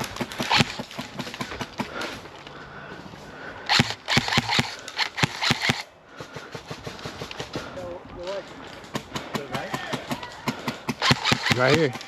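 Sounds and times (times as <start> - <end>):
airsoft guns firing: 0.0 - 2.1, 3.7 - 7.6, 8.9 - 12.0.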